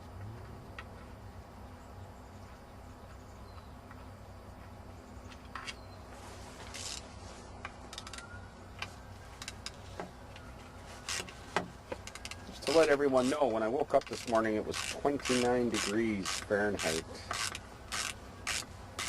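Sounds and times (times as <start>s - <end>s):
steady low hum: 0.0s - 19.0s
hand tools clicking and tapping: 7.6s - 10.5s, 11.1s - 19.0s.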